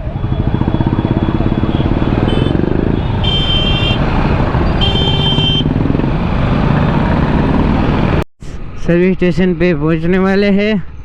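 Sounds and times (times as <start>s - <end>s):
motorcycle engine revving: 0.0s - 8.2s
vehicle horn honking: 1.7s - 4.0s, 4.7s - 5.7s.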